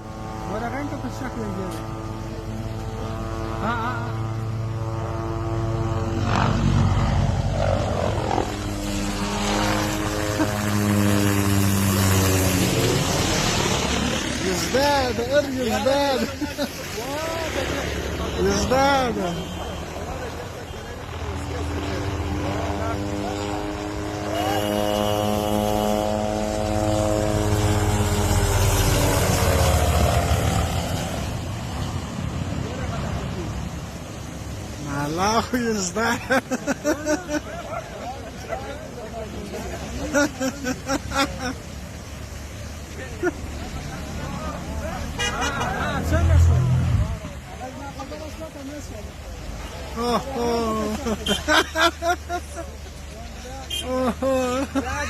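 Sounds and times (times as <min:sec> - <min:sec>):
helicopter flying past: 0:00.0 - 0:46.8
helicopter rotor and engine: 0:05.9 - 0:16.6, 0:20.0 - 0:31.7.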